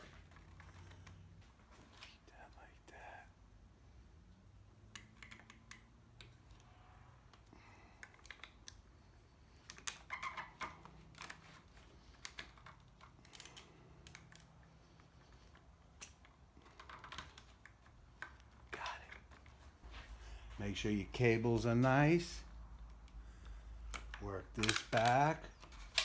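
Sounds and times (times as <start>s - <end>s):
small parts clicking and tapping: 4.8s - 19.6s, 22.8s - 26.0s.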